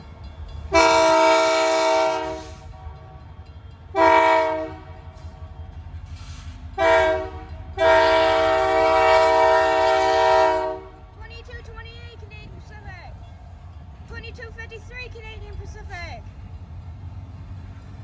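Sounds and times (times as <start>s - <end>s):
low rumble of train: 0.0s - 18.0s
locomotive air horn blasts: 0.7s - 3.2s, 3.9s - 5.2s, 6.3s - 11.0s.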